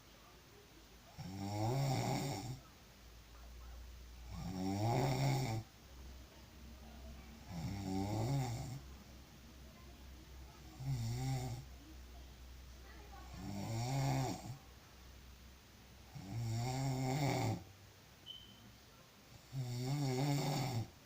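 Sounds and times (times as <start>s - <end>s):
person snoring: 1.2s - 2.6s, 4.3s - 5.7s, 7.4s - 8.8s, 10.8s - 11.7s, 13.4s - 14.6s, 16.1s - 17.6s, 19.3s - 21.0s.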